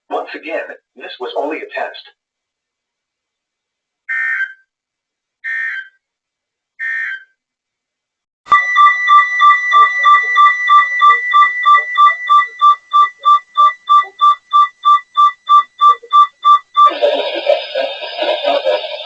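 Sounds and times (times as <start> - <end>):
electronic alarm beeping rapidly: 6.8 - 7.2, 8.5 - 17.0
digital data tone bursts: 8.5 - 19.0.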